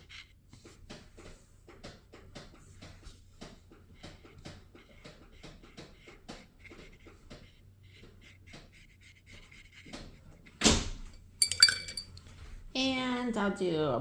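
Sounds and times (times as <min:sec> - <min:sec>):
brush dabbing on paper: 0:04.2 - 0:09.9.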